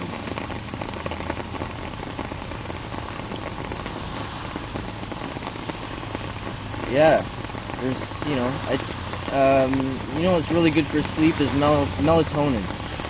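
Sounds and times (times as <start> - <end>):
rain falling: 0.0 - 13.0.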